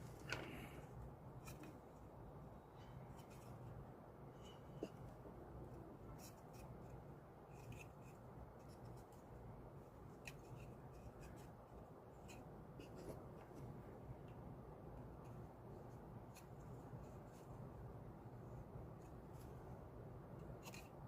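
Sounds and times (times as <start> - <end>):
small clicks and rubbing: 0.0 - 2.0, 2.8 - 3.8, 4.4 - 14.4, 15.0 - 17.6, 20.3 - 21.0
low steady hum: 0.0 - 21.0.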